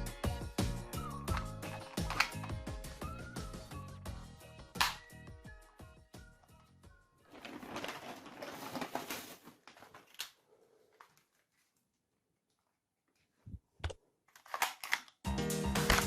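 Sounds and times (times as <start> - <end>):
plastic packaging rustling: 7.2 - 11.8.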